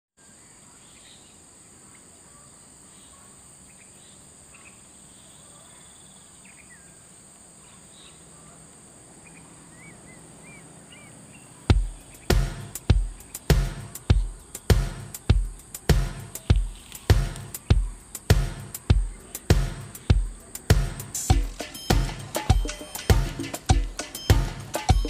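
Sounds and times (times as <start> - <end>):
high-pitched insect trill: 9.2 - 25.0
loud music drum beats: 11.7 - 25.0.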